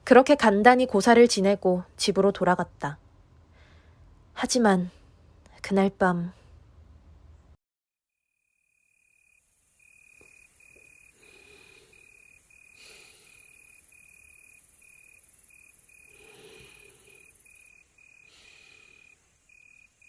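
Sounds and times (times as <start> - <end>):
crickets chirping: 8.2 - 20.0.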